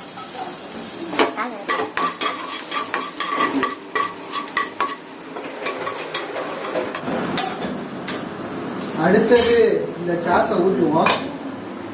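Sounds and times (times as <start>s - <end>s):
garlic sizzling in oil: 0.0s - 7.0s
spatula scraping a pan: 1.7s - 7.0s.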